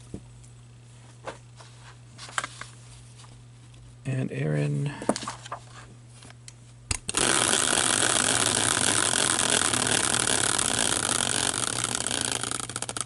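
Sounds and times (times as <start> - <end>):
prize wheel flapper clicking: 7.1 - 13.0.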